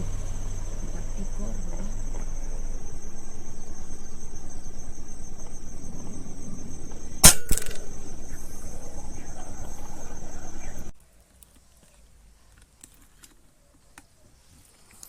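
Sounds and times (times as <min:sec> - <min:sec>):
insect chirring: 0:00.0 - 0:11.0
air rifle shot: 0:07.2 - 0:07.9.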